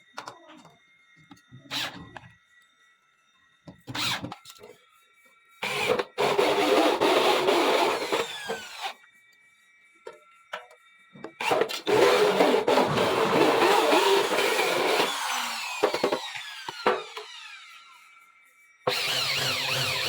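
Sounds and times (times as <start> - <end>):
machine rattling and whirring: 11.4 - 17.7.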